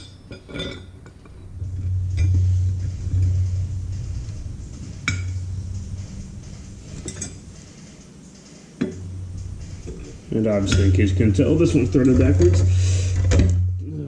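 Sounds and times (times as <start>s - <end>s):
metal tools clinking: 0.0s - 2.5s, 6.4s - 8.1s
low steady hum: 0.0s - 14.0s.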